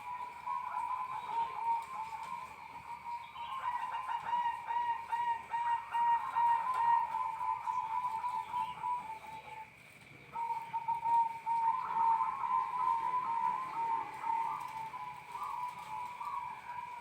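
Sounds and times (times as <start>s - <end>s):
dove cooing: 0.0s - 17.0s.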